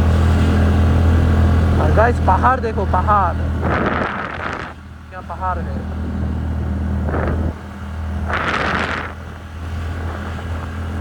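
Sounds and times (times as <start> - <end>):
rushing noise burst: 3.5 - 4.8, 6.9 - 9.4.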